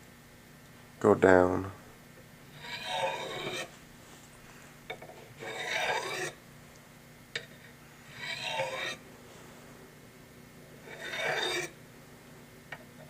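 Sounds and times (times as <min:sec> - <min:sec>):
knife scraping on ceramic rods: 0:02.5 - 0:03.8, 0:04.9 - 0:06.4, 0:08.1 - 0:09.0, 0:10.8 - 0:11.8.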